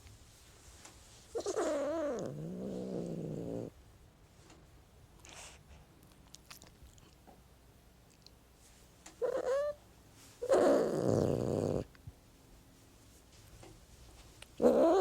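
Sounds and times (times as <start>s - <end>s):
cat meowing and growling: 1.4s - 3.7s, 14.6s - 15.0s.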